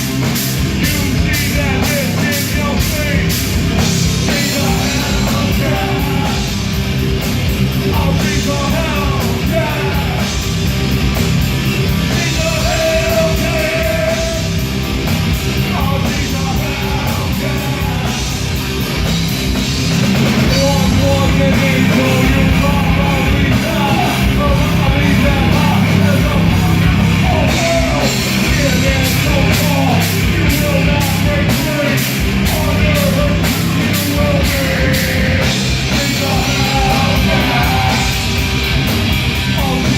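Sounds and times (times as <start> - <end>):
live rock band playing: 0.0 - 39.9
person singing: 12.0 - 14.6, 20.5 - 38.4, 39.5 - 39.9.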